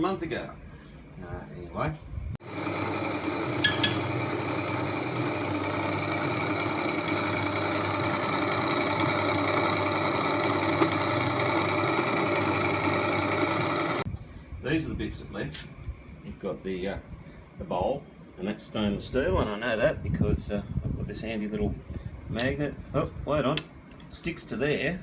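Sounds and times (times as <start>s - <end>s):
ice cream maker motor grinding: 2.4s - 14.1s.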